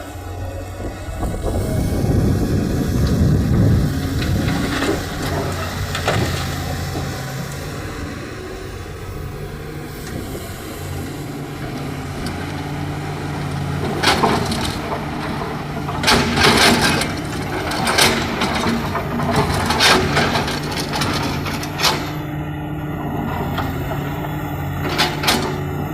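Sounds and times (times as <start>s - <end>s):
diesel engine running: 0.0s - 25.9s.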